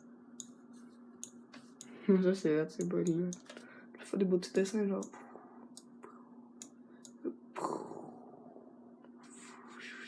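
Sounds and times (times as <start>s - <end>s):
steady low hum: 0.0s - 10.0s
faint computer clicks: 2.8s - 3.6s.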